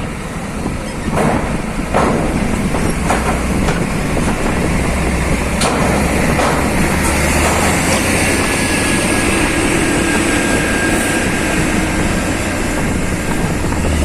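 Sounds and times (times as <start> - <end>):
heavy vehicle rumbling: 0.0 - 14.0
sharp knocks: 1.1 - 4.4, 5.6 - 8.1.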